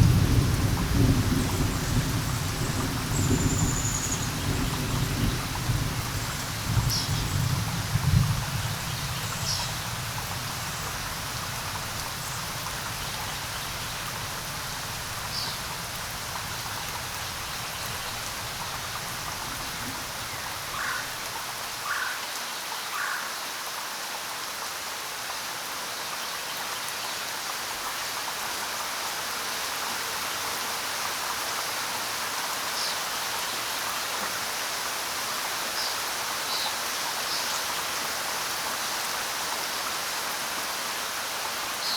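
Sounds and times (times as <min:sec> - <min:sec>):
low rumble of thunder: 0:00.0 - 0:21.5
steady rain falling: 0:00.0 - 0:41.9.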